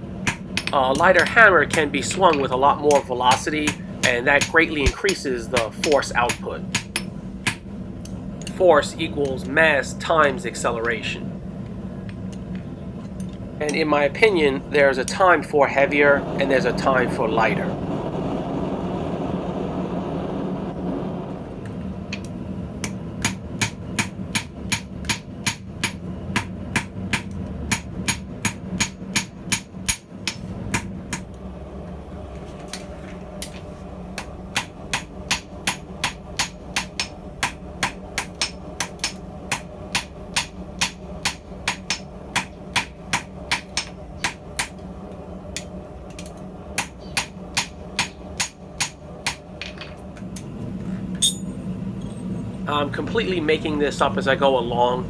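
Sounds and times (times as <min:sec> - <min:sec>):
steady low hum: 0:00.0 - 0:55.0
hammer ringing on anvil: 0:51.2 - 0:52.4.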